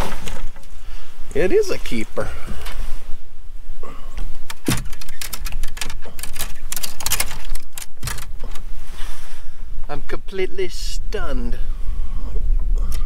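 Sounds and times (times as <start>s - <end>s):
wind rumble on microphone: 0.0s - 13.0s
clicks knocks and rattles: 4.4s - 8.6s.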